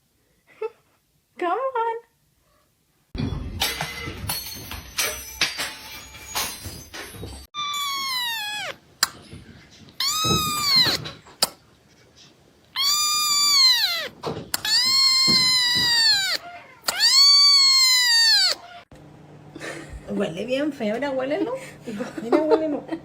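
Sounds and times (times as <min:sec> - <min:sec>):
cat meowing loudly: 0:07.6 - 0:08.8, 0:10.0 - 0:11.1, 0:12.8 - 0:18.8.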